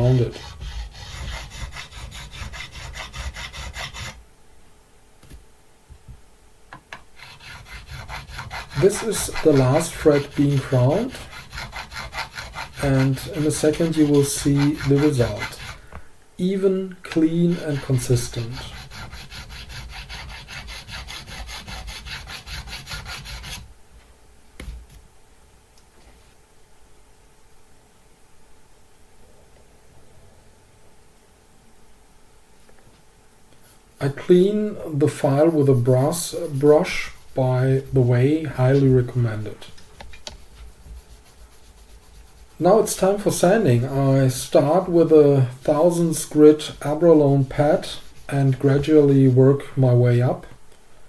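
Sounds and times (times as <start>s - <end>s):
file scraping metal fret: 0.0s - 4.2s, 7.2s - 15.8s, 17.5s - 23.6s.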